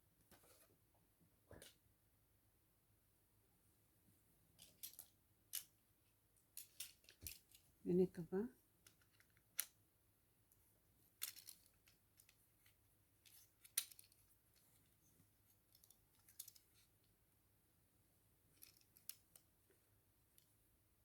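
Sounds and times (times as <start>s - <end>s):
small parts clicking and tapping: 4.6s - 5.8s, 6.6s - 7.7s, 8.8s - 9.8s, 11.2s - 14.7s, 15.6s - 16.8s, 18.5s - 19.6s.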